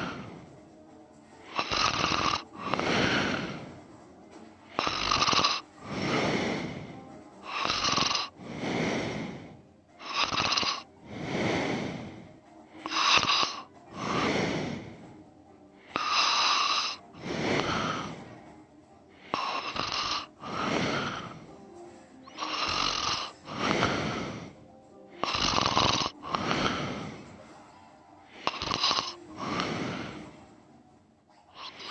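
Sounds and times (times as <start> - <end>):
man snoring: 0.0 - 0.5, 1.4 - 3.8, 4.7 - 15.2, 15.9 - 18.4, 19.2 - 21.6, 22.3 - 24.6, 25.2 - 27.3, 28.3 - 30.5, 31.6 - 31.9.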